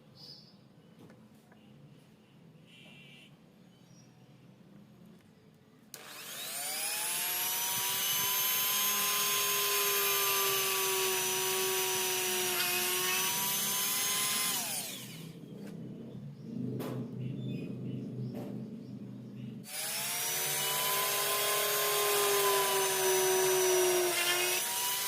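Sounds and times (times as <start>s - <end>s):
small electric motor whining: 6.0s - 15.4s, 19.6s - 25.0s.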